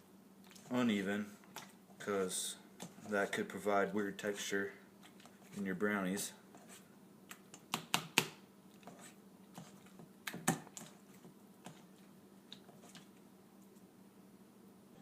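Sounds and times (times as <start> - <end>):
banana being mashed: 6.6 - 13.2.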